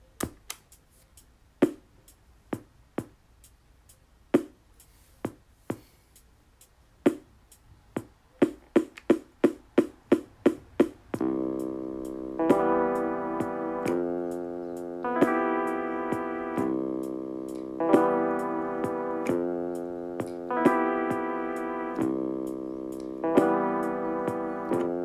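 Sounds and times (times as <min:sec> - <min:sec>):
drum machine beat: 0:00.0 - 0:25.0
held electric piano chord: 0:11.2 - 0:25.0.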